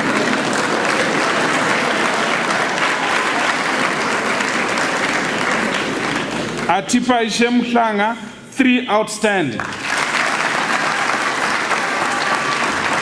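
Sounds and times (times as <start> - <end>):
audience applauding: 0.0 - 8.0, 9.5 - 13.0.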